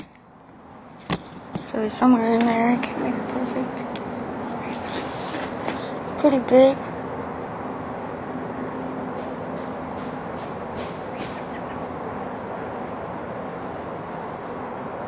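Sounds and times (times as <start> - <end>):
bird chirp: 4.0 - 6.0, 10.4 - 11.9.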